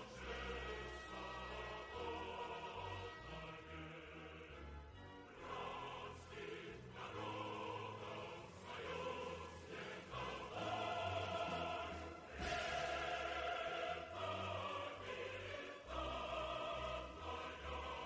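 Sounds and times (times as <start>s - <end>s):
choir singing sustained chords: 0.0s - 18.0s.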